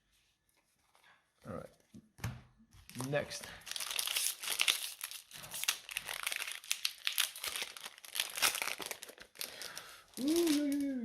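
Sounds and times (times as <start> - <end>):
foil wrapper crinkling: 2.9 - 11.0.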